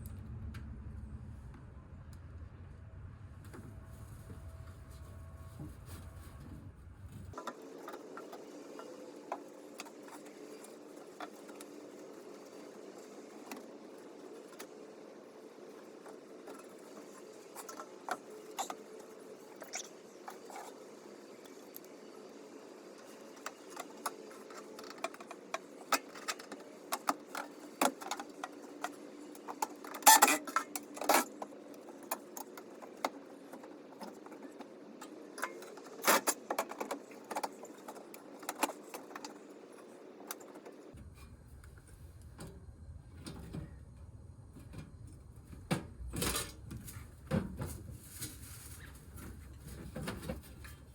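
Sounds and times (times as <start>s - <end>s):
steady low hum: 0.0s - 8.3s.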